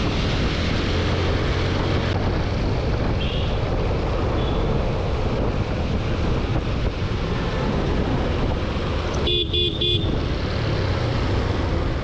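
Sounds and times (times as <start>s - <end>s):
motorcycle rumble: 0.0s - 12.0s
road and wind noise: 0.0s - 12.0s
vehicle horn toots: 9.2s - 10.2s.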